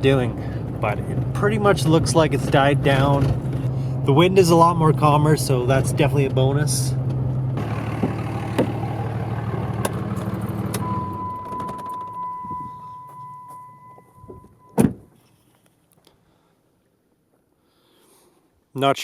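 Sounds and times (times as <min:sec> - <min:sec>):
truck engine running: 0:00.0 - 0:13.4
loud thump: 0:07.9 - 0:08.9, 0:14.3 - 0:15.1
steady warning tone: 0:10.8 - 0:14.8.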